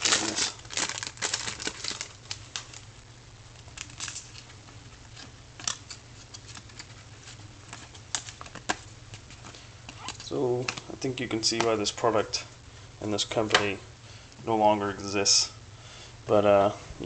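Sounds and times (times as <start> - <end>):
steady low hum: 0.0 - 17.0
cards clicking and rustling: 3.6 - 10.9.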